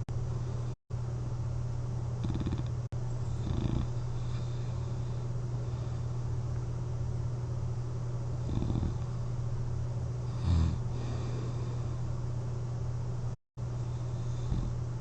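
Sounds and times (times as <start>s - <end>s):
steady low hum: 0.0s - 15.0s
person snoring: 2.2s - 2.7s, 3.3s - 5.0s, 8.4s - 9.1s, 10.3s - 12.0s, 13.9s - 14.8s.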